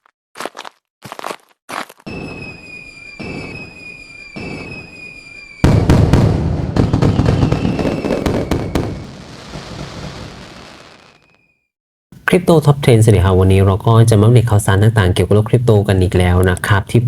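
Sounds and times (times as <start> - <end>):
firework bangs and crackling: 2.1 - 11.4
firework whistles dropping in pitch: 2.1 - 11.7
firework pops: 5.7 - 10.6.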